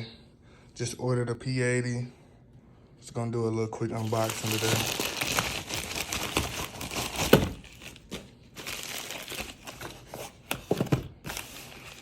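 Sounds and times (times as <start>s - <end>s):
packaging crinkling: 3.9s - 12.0s.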